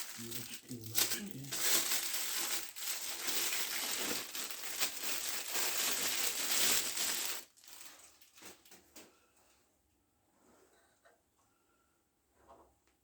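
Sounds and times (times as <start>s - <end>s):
packaging wrap crinkling: 0.0s - 8.8s.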